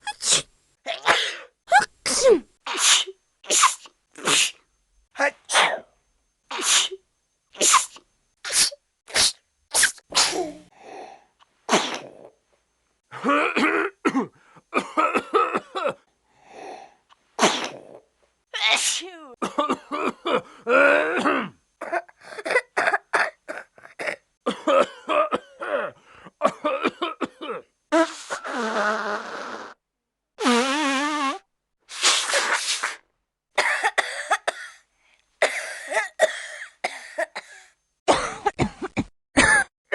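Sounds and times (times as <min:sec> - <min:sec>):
person coughing: 0:00.9 - 0:02.4, 0:09.8 - 0:10.7, 0:13.1 - 0:16.0, 0:18.7 - 0:27.7, 0:33.6 - 0:34.8, 0:35.4 - 0:39.9.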